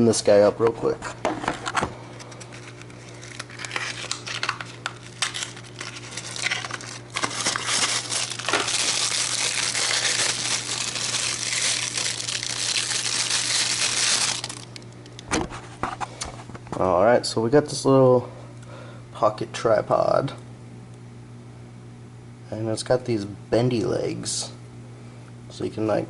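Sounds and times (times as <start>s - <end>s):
packaging crinkling: 2.2s - 15.2s.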